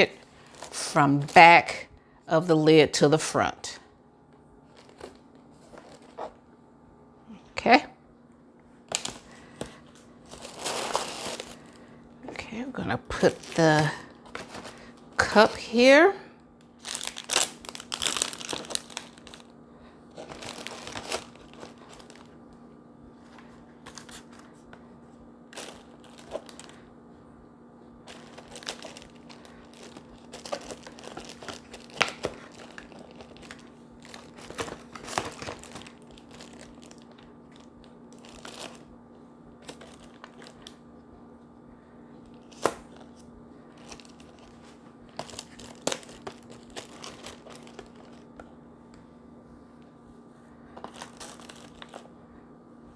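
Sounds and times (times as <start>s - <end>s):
paper crinkling and rustling: 0.0s - 1.4s, 4.6s - 6.4s, 8.9s - 12.6s, 13.2s - 15.7s, 16.6s - 22.5s, 23.2s - 24.9s, 25.5s - 26.8s, 28.0s - 38.9s, 39.6s - 40.8s, 42.2s - 48.5s, 50.7s - 52.1s
faint steady hum: 0.0s - 52.9s.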